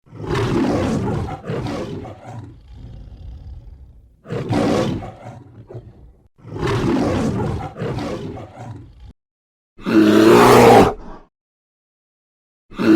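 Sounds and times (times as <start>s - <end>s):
large predator roaring: 0.1s - 9.1s, 9.8s - 11.2s
low rumbling growl: 2.1s - 4.2s.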